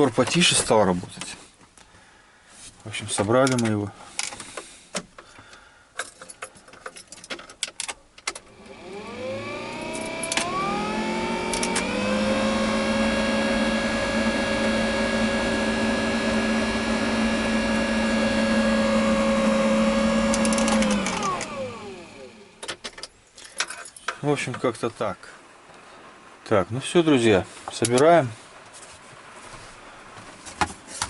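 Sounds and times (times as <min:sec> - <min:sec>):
blower motor whining: 0:08.4 - 0:22.6.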